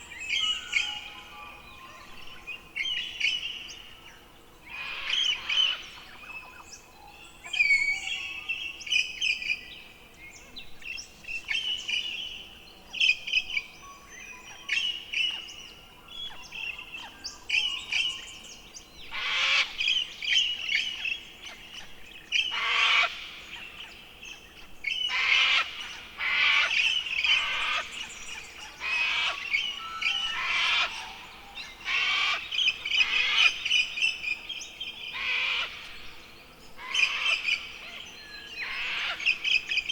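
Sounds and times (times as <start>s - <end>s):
birds chirping and whistling: 0.0s - 9.7s, 12.9s - 39.9s
harsh raspy bird calls: 22.5s - 23.2s, 25.1s - 28.0s, 28.8s - 29.7s, 31.8s - 33.6s, 35.1s - 36.0s.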